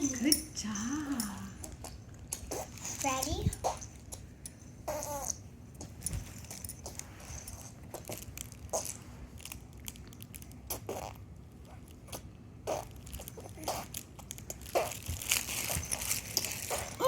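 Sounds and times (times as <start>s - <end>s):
baby making mouth noises: 1.8s - 3.9s, 4.9s - 5.4s, 12.1s - 14.0s, 14.6s - 15.1s, 16.7s - 17.0s.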